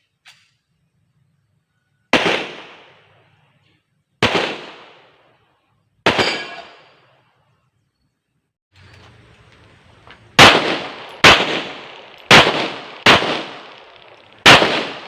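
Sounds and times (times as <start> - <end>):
pistol shots: 2.1 - 3.1, 4.2 - 5.2, 6.0 - 6.9, 10.4 - 15.0.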